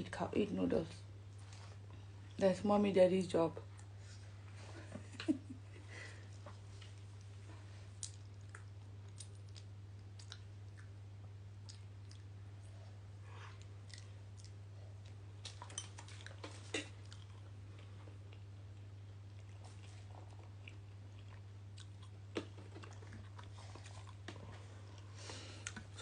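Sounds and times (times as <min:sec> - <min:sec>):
steady low hum: 0:00.0 - 0:26.0
child chewing noodles: 0:05.9 - 0:26.0.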